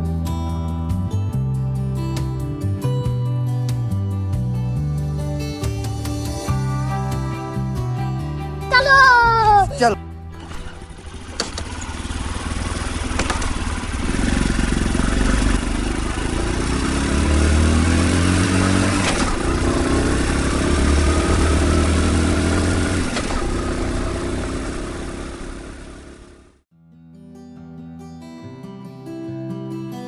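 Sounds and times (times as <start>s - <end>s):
vehicle engine revving: 10.3s - 26.6s.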